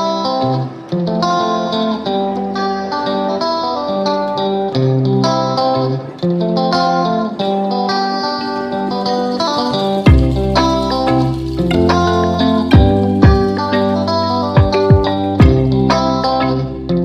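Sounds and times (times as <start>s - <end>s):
plucked guitar tune: 0.0s - 17.0s.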